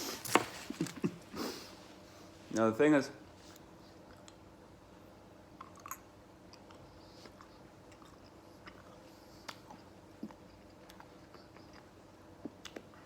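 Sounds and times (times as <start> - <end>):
low room hum: 0.0 - 13.0
chewing sweets: 5.6 - 13.0.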